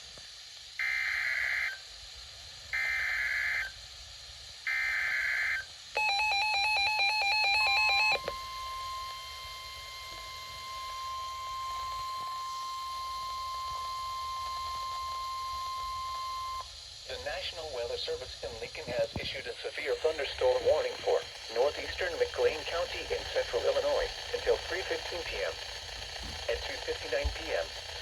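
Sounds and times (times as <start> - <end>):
digital data bursts: 4.7 - 17.4, 19.0 - 28.0
steady attention tone: 6.0 - 17.6, 19.4 - 28.0.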